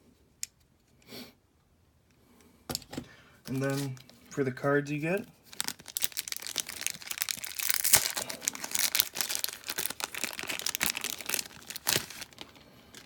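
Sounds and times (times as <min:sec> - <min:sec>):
plastic packaging crinkling: 0:05.0 - 0:13.0.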